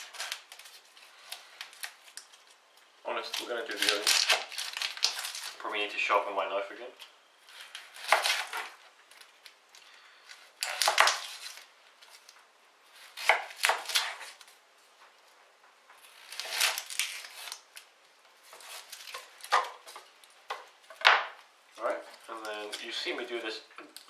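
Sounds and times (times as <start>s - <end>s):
knife cutting onion on board: 7.6s - 8.8s, 10.6s - 11.4s, 12.9s - 14.4s.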